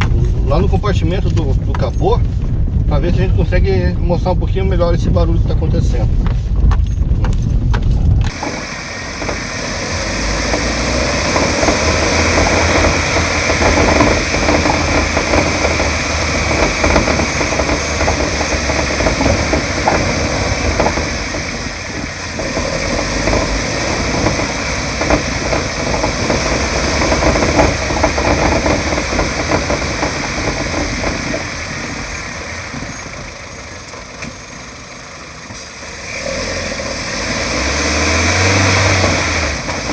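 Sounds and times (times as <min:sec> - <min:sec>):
car engine and road noise: 0:00.0 - 0:39.9
suspension knocking: 0:00.0 - 0:39.9.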